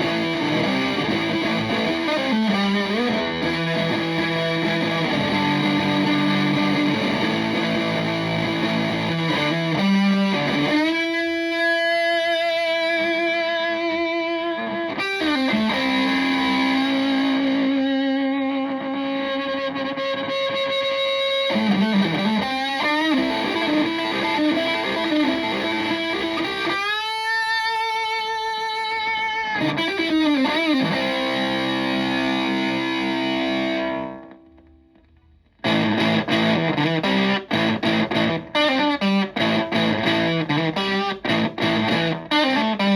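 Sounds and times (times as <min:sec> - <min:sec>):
fuzzy electric guitar: 0:00.0 - 0:42.9.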